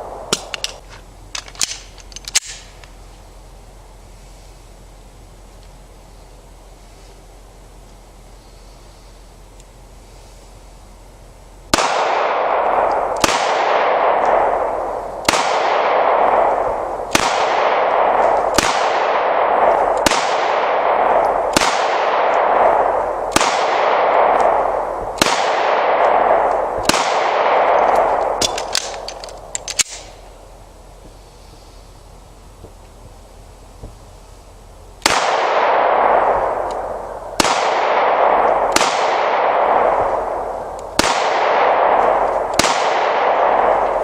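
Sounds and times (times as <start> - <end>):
pistol shots with echo: 11.7 - 30.2, 35.0 - 44.0.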